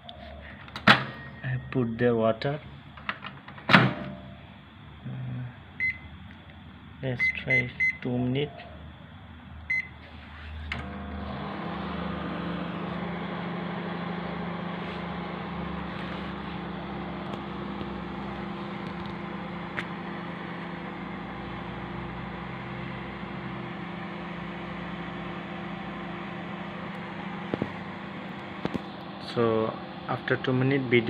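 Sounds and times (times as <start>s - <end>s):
microwave humming: 0.5s - 2.1s, 10.6s - 31.0s
microwave keypad beep: 5.8s - 6.1s, 7.2s - 8.0s, 9.7s - 9.9s.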